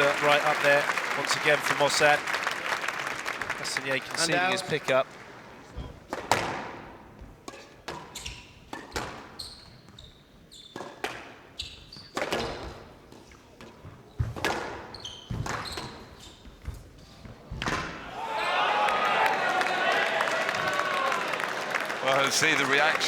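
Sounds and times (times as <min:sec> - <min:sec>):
squash ball hitting rackets and walls: 0:06.1 - 0:09.4, 0:10.7 - 0:16.8
court shoes squeaking: 0:07.2 - 0:18.2.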